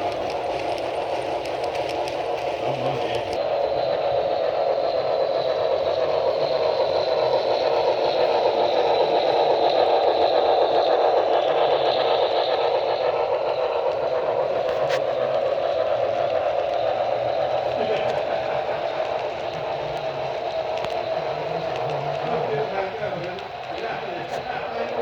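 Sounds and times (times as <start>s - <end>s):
model train rumbling on track: 0.0s - 25.0s.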